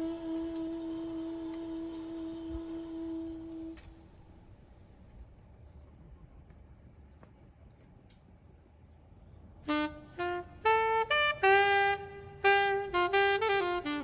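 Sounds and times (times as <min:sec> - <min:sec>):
jazz saxophone melody: 0:00.0 - 0:04.1, 0:09.6 - 0:14.0
faint low hum: 0:00.0 - 0:13.0.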